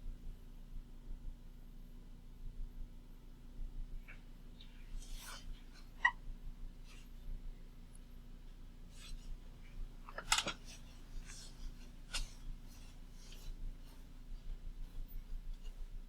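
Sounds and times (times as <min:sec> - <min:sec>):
low electrical hum: 0:00.0 - 0:16.0
scratches and soft clicks: 0:08.9 - 0:16.0.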